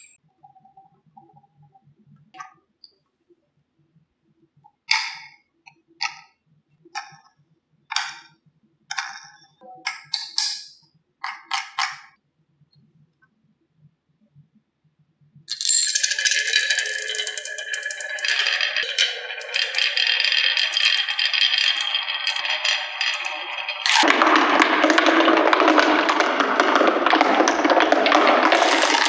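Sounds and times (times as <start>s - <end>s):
marbles clacking on wooden run: 15.6s - 24.1s, 28.2s - 29.0s.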